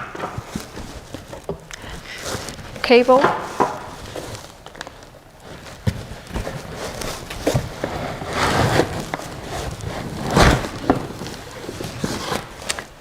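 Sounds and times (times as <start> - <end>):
knocks and clunks of parts: 0.0 - 1.8
packing material rustling: 0.0 - 13.0.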